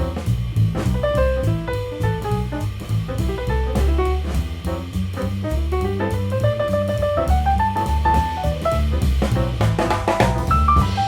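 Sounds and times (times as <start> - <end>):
bass line: 0.0 - 11.0
drum kit: 0.0 - 11.0
jazz melody: 0.0 - 11.0.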